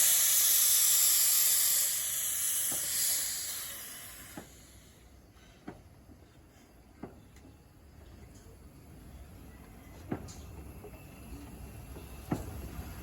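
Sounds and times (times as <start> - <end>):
locomotive steam hissing: 0.0 - 5.8.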